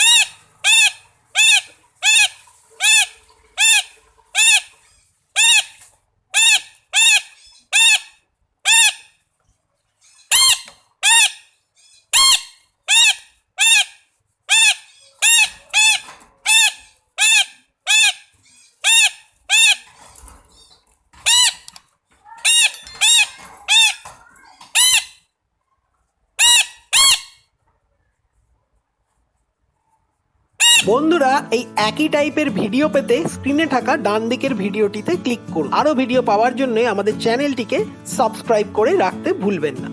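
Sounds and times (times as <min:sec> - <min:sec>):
parakeet calling: 0:00.0 - 0:09.1, 0:10.0 - 0:13.9, 0:14.5 - 0:19.9, 0:26.4 - 0:27.4, 0:30.6 - 0:39.9.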